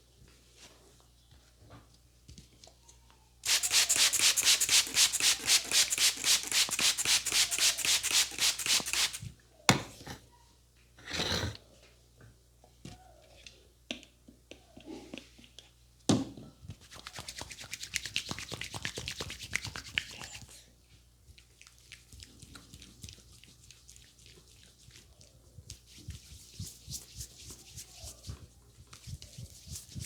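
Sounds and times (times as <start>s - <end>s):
hands rubbing head in massage: 3.4s - 9.2s, 16.9s - 20.4s, 25.8s - 28.4s, 29.0s - 30.0s.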